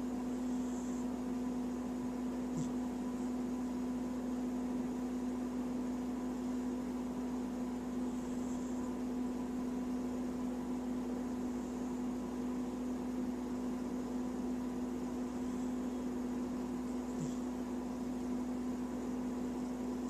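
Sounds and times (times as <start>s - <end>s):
steady mechanical hum: 0.0s - 20.0s.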